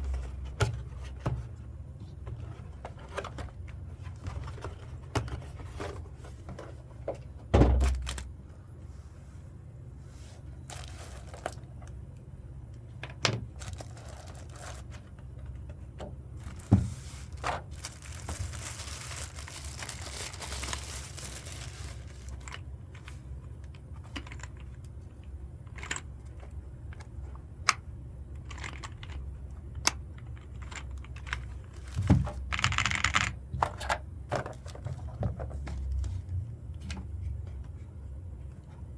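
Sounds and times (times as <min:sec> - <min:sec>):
packaging crinkling and rustling: 0:07.8 - 0:08.3, 0:10.6 - 0:12.0, 0:13.2 - 0:24.6, 0:30.4 - 0:33.3.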